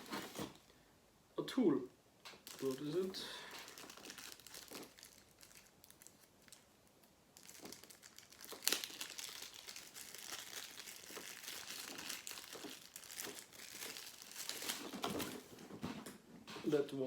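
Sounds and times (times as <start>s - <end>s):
packaging crinkling and tearing: 0.0s - 0.6s, 2.3s - 15.7s
sharp crackle: 2.3s - 15.0s.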